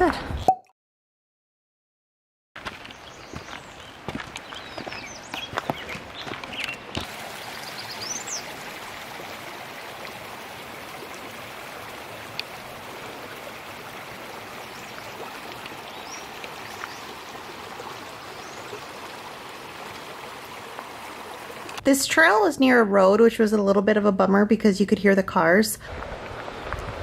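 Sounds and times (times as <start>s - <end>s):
creek rushing over rocks: 2.6s - 21.8s, 25.8s - 27.0s.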